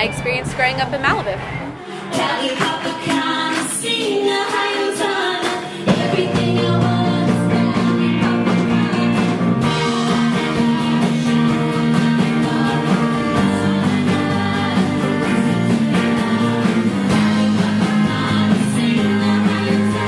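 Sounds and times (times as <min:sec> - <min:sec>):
bass: 0:00.0 - 0:01.8, 0:05.8 - 0:20.0
guitar: 0:00.0 - 0:20.0
woman singing pop song: 0:00.0 - 0:20.0.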